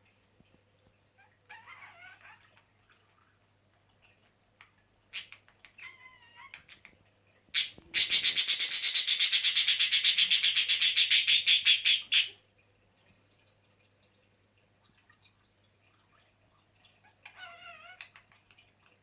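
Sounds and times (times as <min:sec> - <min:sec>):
budgerigar warbling chirp: 0:07.6 - 0:12.4.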